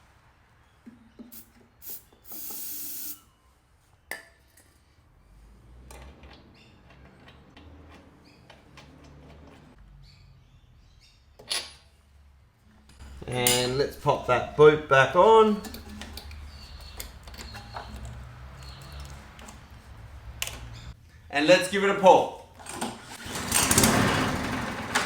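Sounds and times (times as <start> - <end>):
aerosol spray hiss: 1.4 - 3.2
handling clicks and knocks: 12.8 - 21.0.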